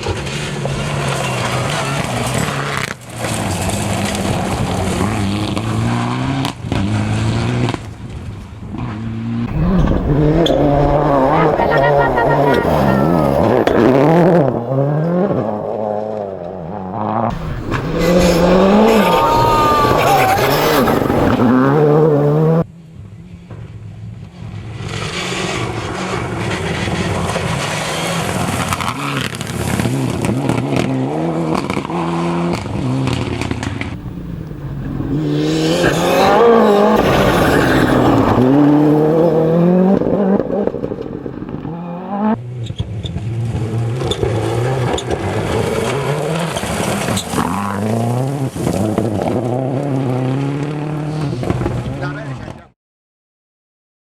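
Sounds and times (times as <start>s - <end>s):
rally car engines revving: 0.0s - 22.7s, 24.4s - 52.7s
tyre noise: 1.8s - 14.6s, 17.3s - 22.6s, 33.9s - 43.2s.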